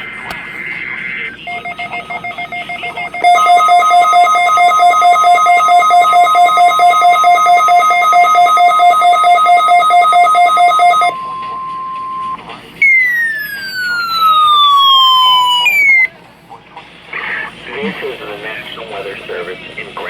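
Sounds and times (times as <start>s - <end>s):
steady alarm tone: 1.4s - 16.1s
pulsing two-pitch beeps: 1.5s - 16.1s.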